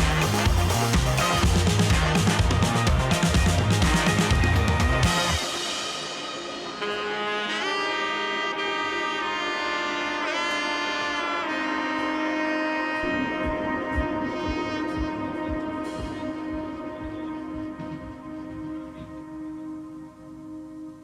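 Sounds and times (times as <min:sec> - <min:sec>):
low steady beat: 0:00.0 - 0:06.8, 0:13.0 - 0:21.0
melodic lead with pitch bends: 0:00.0 - 0:07.9, 0:12.7 - 0:21.0.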